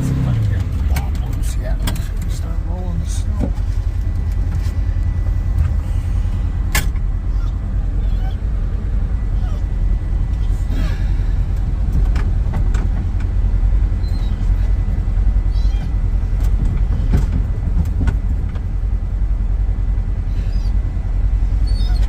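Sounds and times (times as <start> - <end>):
steady low rumble: 0.0 - 22.0
dog whining: 7.2 - 8.6, 9.3 - 10.7, 14.0 - 14.7, 15.5 - 16.0, 20.3 - 20.8, 21.5 - 22.0.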